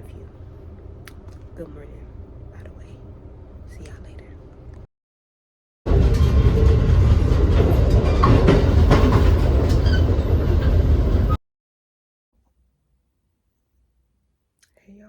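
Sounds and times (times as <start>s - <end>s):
rail clicks: 5.9s - 11.4s
train rumbling on rails: 5.9s - 11.4s.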